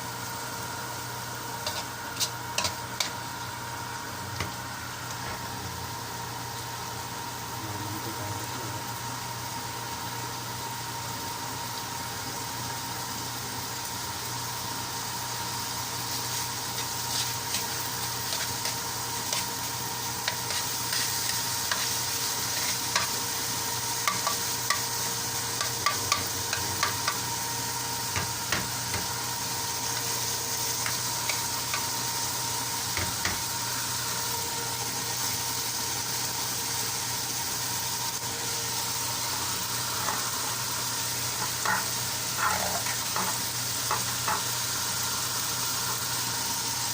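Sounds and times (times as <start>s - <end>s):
food sizzling in a frying pan: 0.0s - 46.9s
utensil scraping a pan: 1.6s - 3.2s, 16.8s - 19.6s, 20.2s - 23.2s.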